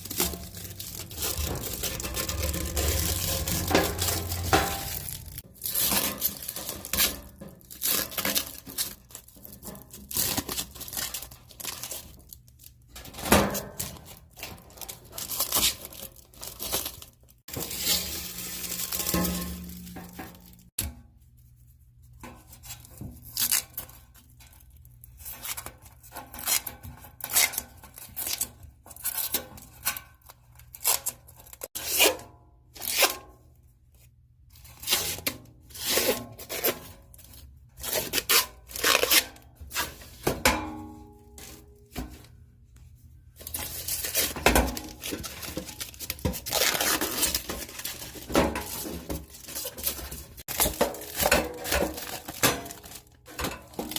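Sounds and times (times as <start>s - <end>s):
plastic film being peeled: 0.0s - 12.8s, 13.8s - 20.7s, 34.8s - 39.4s, 43.4s - 53.2s.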